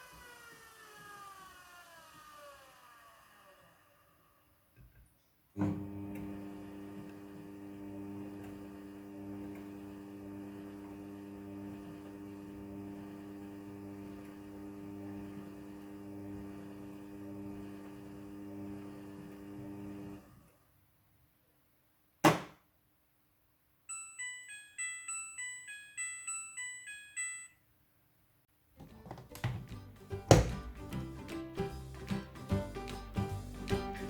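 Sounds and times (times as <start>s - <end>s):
washing machine humming: 5.6s - 20.4s, 28.8s - 34.0s.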